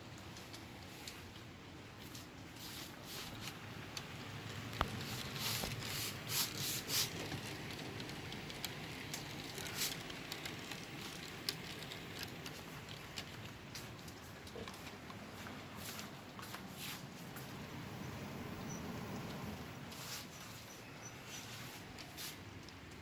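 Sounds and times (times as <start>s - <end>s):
model train wheels clicking: 0.0s - 16.6s, 17.2s - 23.0s
model train rumble: 3.6s - 14.5s.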